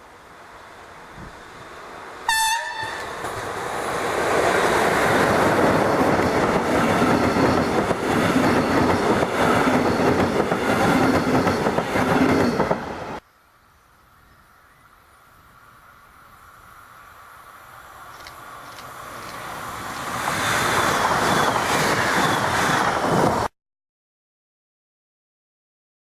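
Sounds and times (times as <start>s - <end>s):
train passing: 0.0s - 23.5s
train horn blast: 2.3s - 3.2s
wheels rolling on rails: 3.0s - 12.8s.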